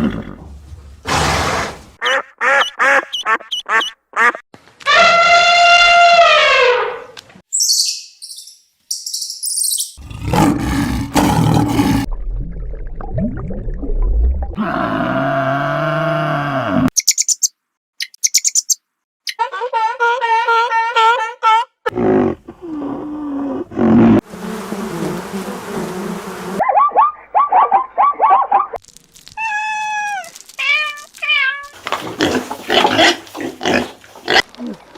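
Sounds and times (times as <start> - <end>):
high bird chirps: 7.5 - 10.0, 17.0 - 19.4
rough animal roar: 10.0 - 12.1, 14.6 - 16.9
animal buzzing: 24.2 - 26.6.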